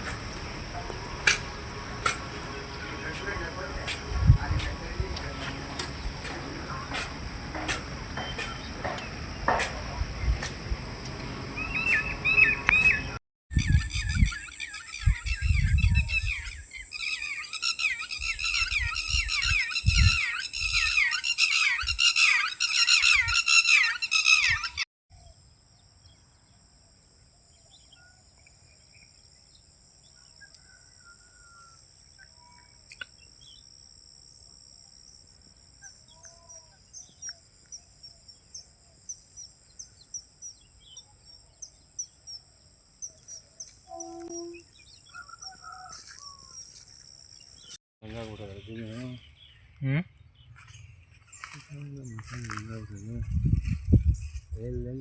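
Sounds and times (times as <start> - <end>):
wind thumps on microphone: 0.0 - 14.4, 15.0 - 16.6, 18.2 - 21.0, 52.8 - 55.0
flock of birds chirping: 0.0 - 25.4, 27.4 - 33.8, 34.6 - 55.0.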